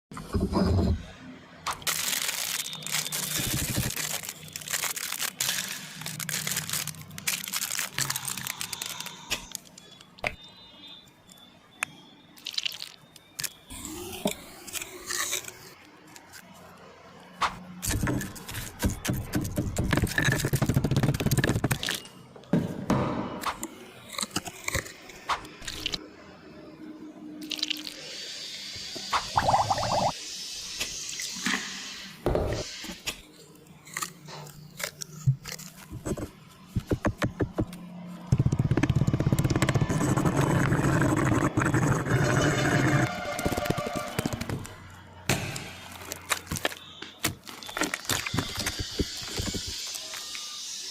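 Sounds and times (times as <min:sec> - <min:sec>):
slime squelching and crackling: 0:01.8 - 0:09.6.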